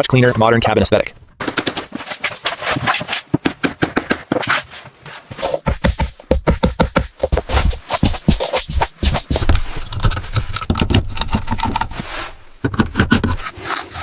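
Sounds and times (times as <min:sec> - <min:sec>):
sharp taps and knocks on trim: 0:05.6 - 0:09.6
heavier thumps: 0:05.6 - 0:11.2.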